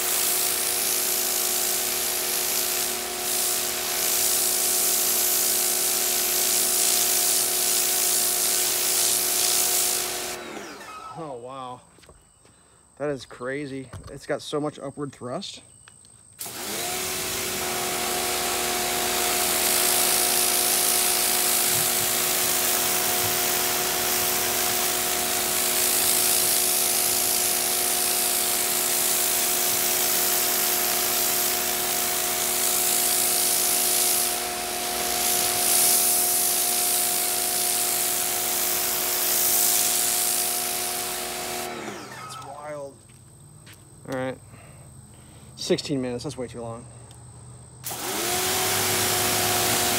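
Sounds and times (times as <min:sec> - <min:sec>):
water jet hissing: 0:00.0 - 0:10.6, 0:16.4 - 0:42.6
pressure washer motor whine: 0:00.0 - 0:11.5, 0:16.4 - 0:42.9, 0:47.8 - 0:49.9.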